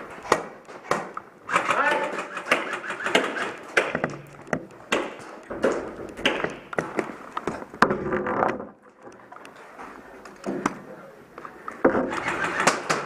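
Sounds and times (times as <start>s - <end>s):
sharp clicks: 0.0s - 7.5s, 12.1s - 13.0s
irregular knocks and taps: 2.5s - 8.6s.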